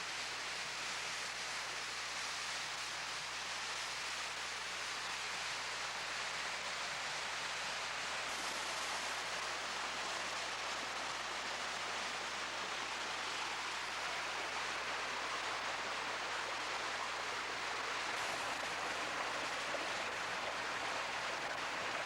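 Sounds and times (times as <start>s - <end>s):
waterfall rushing water: 8.2s - 22.0s.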